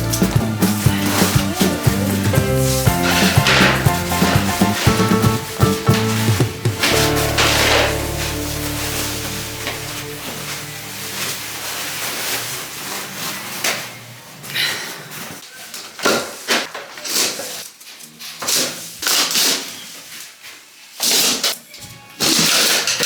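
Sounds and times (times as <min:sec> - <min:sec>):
knocks clatters and scrapes: 0:00.0 - 0:08.7.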